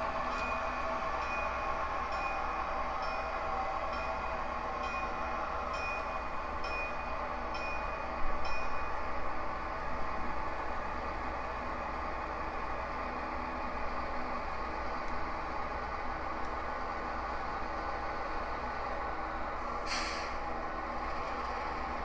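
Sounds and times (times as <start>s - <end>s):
model diesel locomotive running: 0.0s - 22.0s
locomotive bell ringing: 0.1s - 9.2s.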